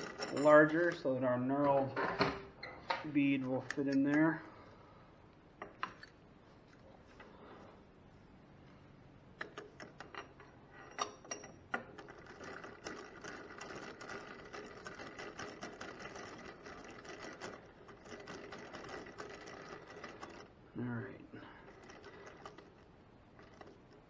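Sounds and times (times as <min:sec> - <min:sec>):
metal clicks and clinks: 0:00.0 - 0:01.9, 0:09.4 - 0:14.2
lathe mechanical rattle: 0:00.0 - 0:02.2, 0:09.4 - 0:20.6, 0:21.4 - 0:24.0.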